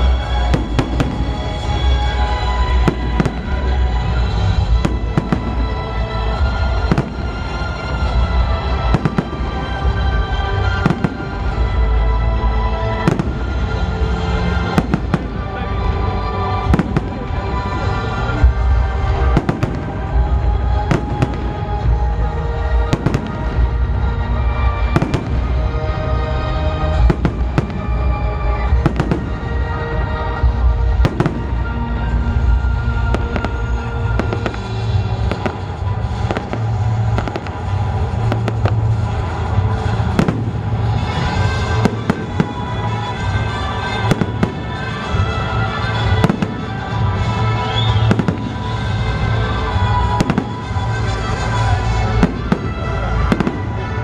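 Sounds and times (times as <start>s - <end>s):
fireworks bursting and crackling: 0.0s - 54.0s.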